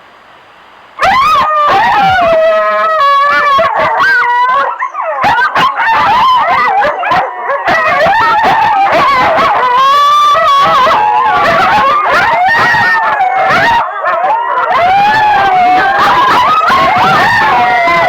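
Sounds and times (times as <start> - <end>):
faint hiss: 0.0 - 1.0
coyotes howling and yipping: 1.0 - 18.0.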